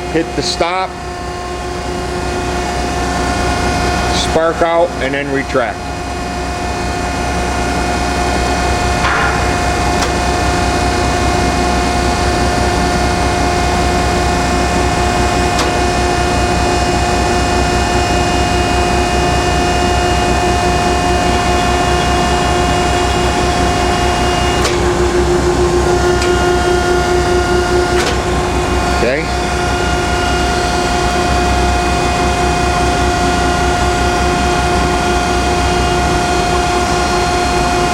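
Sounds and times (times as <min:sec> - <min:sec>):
grinder hum and whine: 0:00.0 - 0:37.9
feed mechanism clicks: 0:09.0 - 0:10.6.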